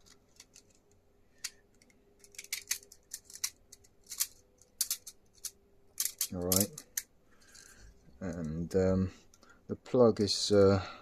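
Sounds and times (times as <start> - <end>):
plastic parts clicking and tapping: 0.0 - 7.7.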